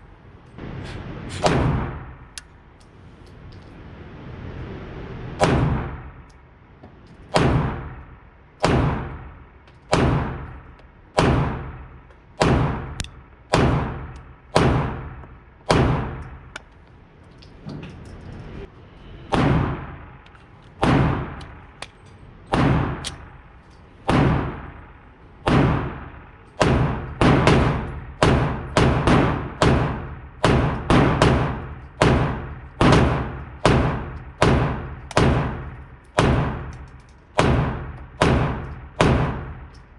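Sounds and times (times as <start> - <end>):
rifle shots with echo: 1.4 - 2.2, 8.6 - 10.6, 11.2 - 16.4, 19.3 - 20.2, 20.8 - 21.4, 22.5 - 23.3, 24.1 - 36.8, 37.4 - 39.7.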